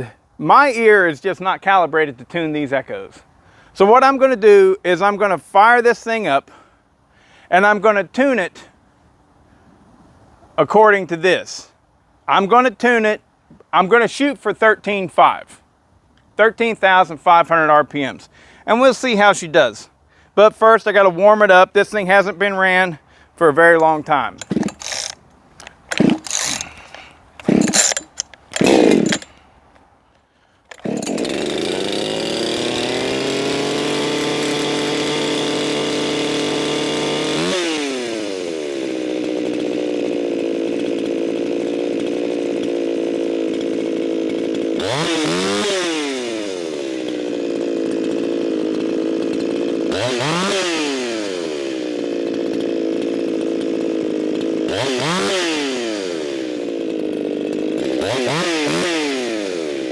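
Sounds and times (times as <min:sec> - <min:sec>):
chainsaw engine running: 0:23.7 - 0:29.5, 0:30.7 - 0:59.9
chainsaw throttle blips: 0:23.7 - 0:29.5, 0:30.7 - 0:59.9
starter cord pulls: 0:23.7 - 0:29.9, 0:30.6 - 0:32.8.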